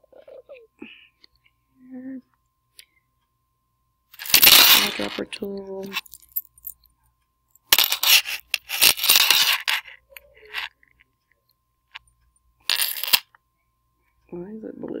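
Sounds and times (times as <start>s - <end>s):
metal bracelet clinking on desk: 4.2s - 5.2s, 5.9s - 6.9s, 12.7s - 13.4s.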